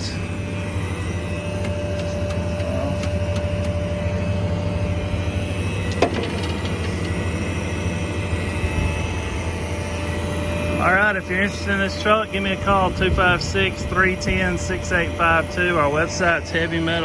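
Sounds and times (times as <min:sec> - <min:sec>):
diesel engine idling: 0:00.0 - 0:17.0
high engine whine: 0:00.0 - 0:17.0.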